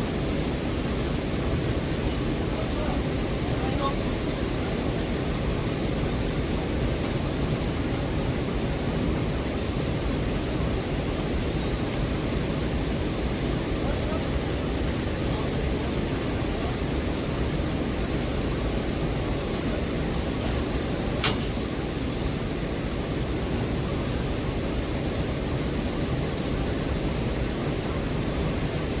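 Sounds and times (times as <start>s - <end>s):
sharp click: 21.2s - 22.4s.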